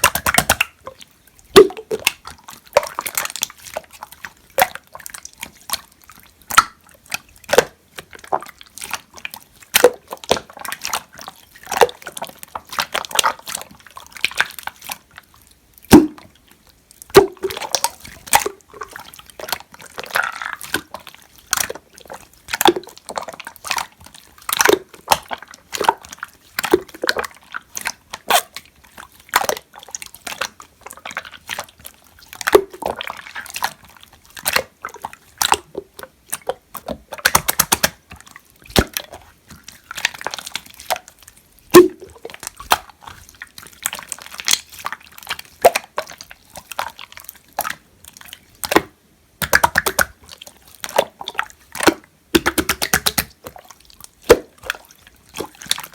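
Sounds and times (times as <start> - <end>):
slime squished by hand popping: 0.0 - 0.7, 15.9 - 16.3, 37.2 - 38.0, 41.7 - 42.9, 51.8 - 53.4.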